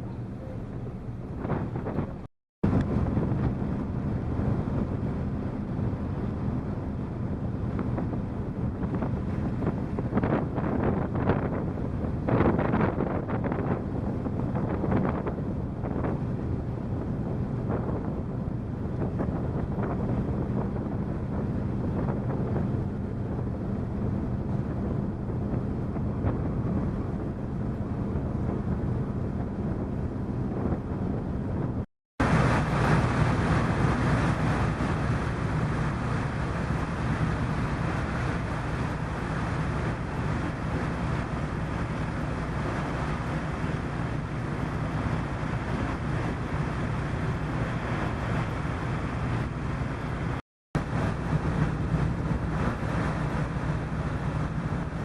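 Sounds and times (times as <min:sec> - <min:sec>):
ferry engines droning: 0:00.0 - 0:02.2
wind on microphone: 0:00.0 - 0:55.0.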